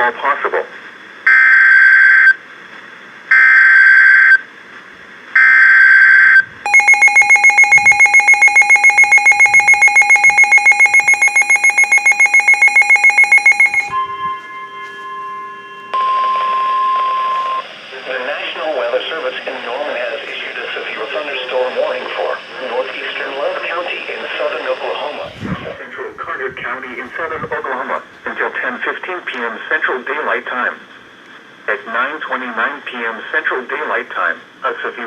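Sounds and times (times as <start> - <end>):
digital header data bursts: 6.7 - 14.0
rapidly pulsing attention tone: 6.7 - 14.7
steady alert tones: 6.7 - 15.1.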